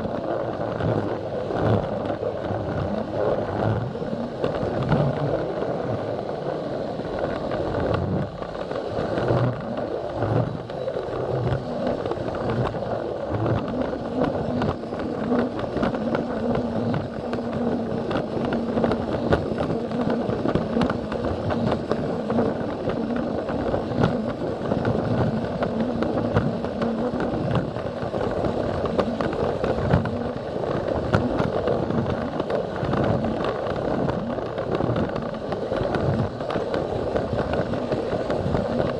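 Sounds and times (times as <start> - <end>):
steady hum: 0.0 - 38.9.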